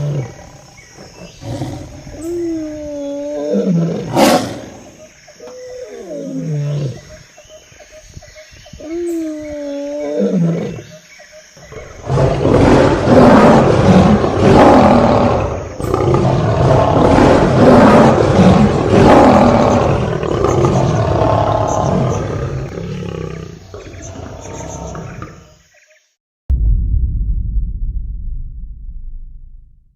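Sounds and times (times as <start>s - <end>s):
lion roaring: 11.7s - 25.4s.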